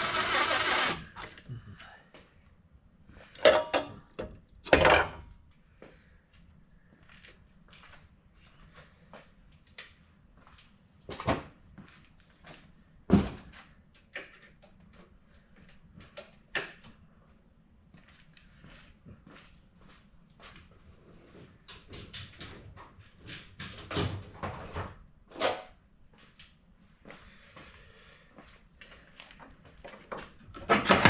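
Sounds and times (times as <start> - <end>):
tools and parts clunking: 3.4 - 5.2, 30.6 - 31.0.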